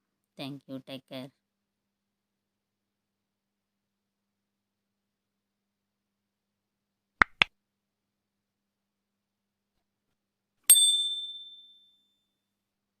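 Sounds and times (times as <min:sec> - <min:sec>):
sharp clicks: 0:07.2 - 0:07.5
bright bell ding: 0:10.7 - 0:12.2.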